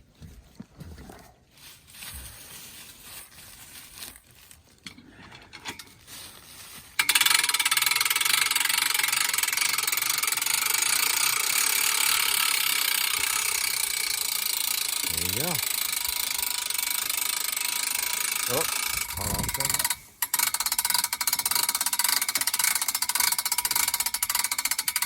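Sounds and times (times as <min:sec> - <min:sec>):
faint handling sounds: 0:00.0 - 0:07.0.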